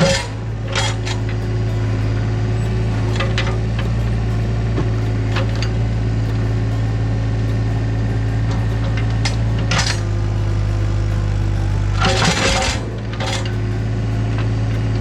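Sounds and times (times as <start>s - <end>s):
sharp clanks and scrapes: 0.0s - 1.4s, 12.0s - 13.7s
diesel engine running: 0.0s - 15.0s.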